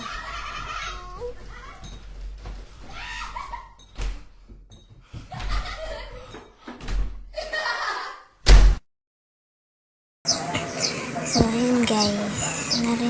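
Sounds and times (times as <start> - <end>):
sudden loud bang: 8.4 - 8.8
voice-like sounds: 11.1 - 13.0.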